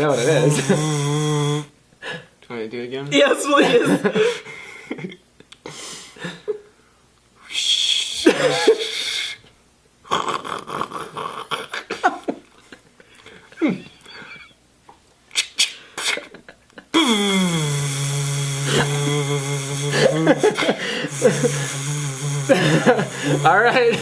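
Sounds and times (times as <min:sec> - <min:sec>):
squeaky vocal slides: 0:00.0 - 0:01.7, 0:15.3 - 0:16.3, 0:17.0 - 0:23.6
vocal buzzing hiss: 0:00.0 - 0:01.8, 0:10.1 - 0:11.8, 0:16.9 - 0:24.0
person making breathy hisses: 0:00.1 - 0:01.7, 0:05.6 - 0:06.2, 0:07.4 - 0:09.5, 0:15.3 - 0:16.3, 0:16.9 - 0:23.6
mouth clicks: 0:15.3 - 0:16.3.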